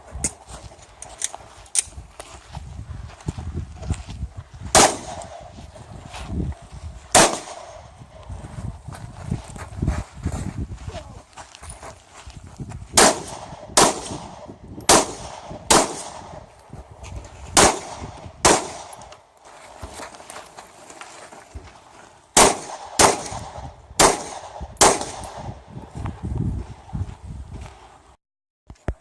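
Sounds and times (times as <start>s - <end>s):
pistol shots: 4.8s - 5.5s, 7.1s - 7.8s, 13.0s - 16.4s, 17.6s - 19.1s, 22.4s - 25.5s.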